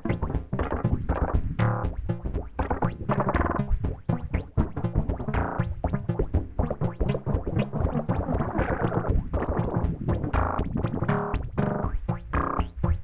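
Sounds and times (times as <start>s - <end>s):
synthesizer sequence: 0.0s - 13.0s.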